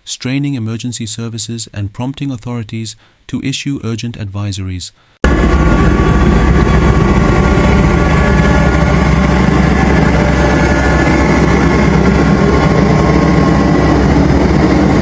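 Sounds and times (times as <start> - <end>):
engine running with low hum: 5.2 - 15.0.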